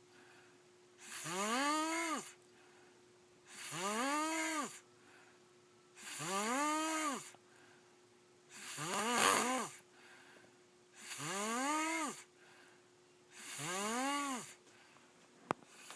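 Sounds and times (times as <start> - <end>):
boy snoring: 1.0 - 2.4, 3.5 - 4.8, 6.0 - 7.4, 8.5 - 9.8, 11.0 - 12.3, 13.3 - 14.6.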